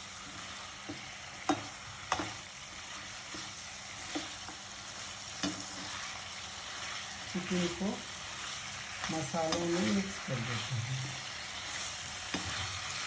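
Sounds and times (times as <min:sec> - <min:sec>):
food sizzling in a hot pan: 0:00.0 - 0:13.0
spoon knocking against pan: 0:00.8 - 0:02.4.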